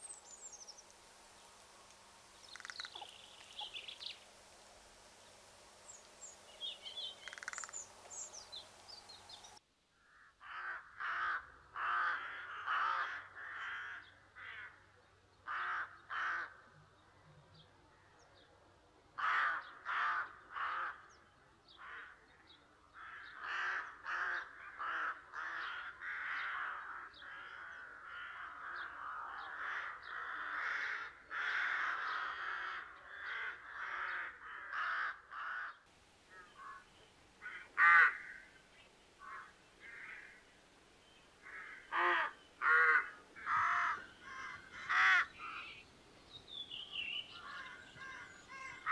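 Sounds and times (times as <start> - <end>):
small birds chirping: 0.0 - 9.6, 36.1 - 48.9
steady hiss: 0.0 - 9.6, 35.9 - 48.5
crows cawing: 2.4 - 3.8, 6.6 - 8.5, 10.0 - 14.8, 15.5 - 16.6, 19.2 - 21.1, 23.0 - 38.6, 39.2 - 40.5, 41.4 - 45.9, 46.7 - 48.9.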